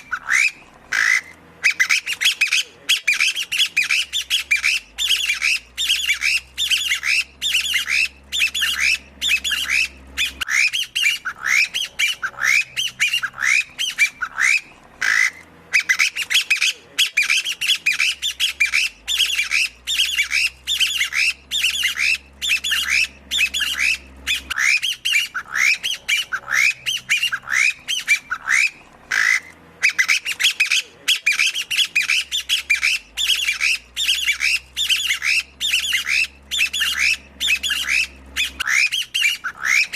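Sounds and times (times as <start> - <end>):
partridge calling squawky notes: 0.0 - 39.9.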